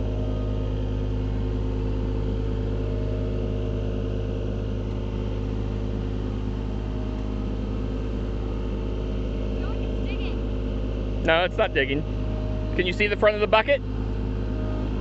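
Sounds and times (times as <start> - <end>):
skid steer engine running: 0.0 - 15.0.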